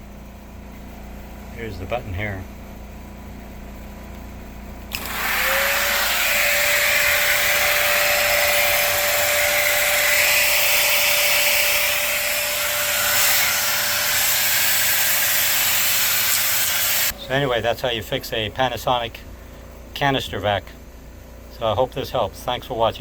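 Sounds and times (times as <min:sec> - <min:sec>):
vacuum cleaner motor running: 0:04.9 - 0:17.2.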